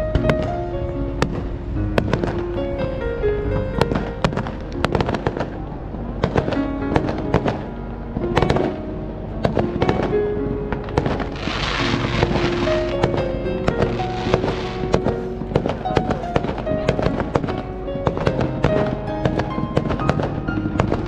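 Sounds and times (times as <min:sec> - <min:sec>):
dense crackling hiss: 0:00.0 - 0:21.0
music with melody: 0:00.0 - 0:21.0
fireworks bangs and crackles: 0:01.2 - 0:02.4, 0:03.4 - 0:07.7, 0:09.4 - 0:10.2, 0:10.8 - 0:21.0.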